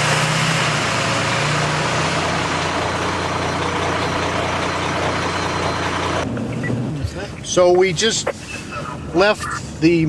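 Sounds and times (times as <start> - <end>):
car engine hum: 0.0 - 7.1
road noise: 0.0 - 10.0.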